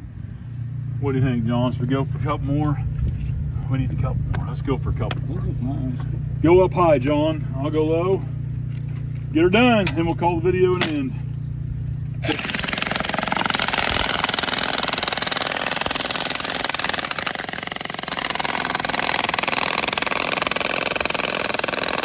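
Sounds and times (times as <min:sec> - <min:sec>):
jackhammers rattling into rock: 0:12.2 - 0:22.0.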